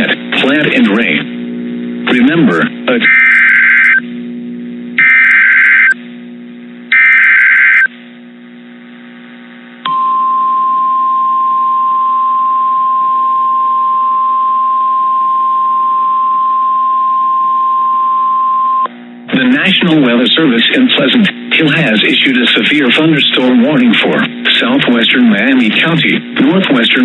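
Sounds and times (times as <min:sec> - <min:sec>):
buzzing digital data bursts: 0:03.0 - 0:04.0, 0:05.0 - 0:06.0, 0:06.9 - 0:07.9
steady single-pitch alarm tone: 0:03.1 - 0:04.0, 0:05.0 - 0:06.0, 0:06.9 - 0:07.9, 0:09.9 - 0:18.9.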